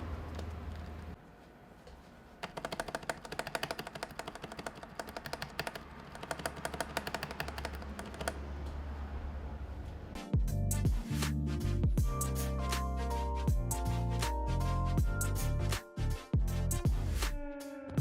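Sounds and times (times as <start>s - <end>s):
soft keyboard typing: 2.4s - 8.4s
music: 10.1s - 18.0s.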